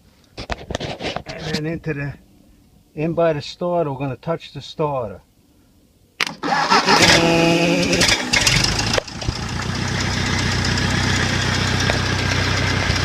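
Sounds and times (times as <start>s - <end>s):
tractor engine starting and idling: 6.2s - 13.0s.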